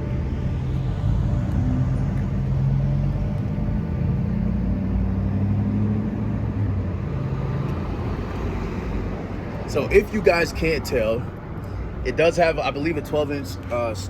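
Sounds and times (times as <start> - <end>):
vehicle engine running: 0.0 - 9.3.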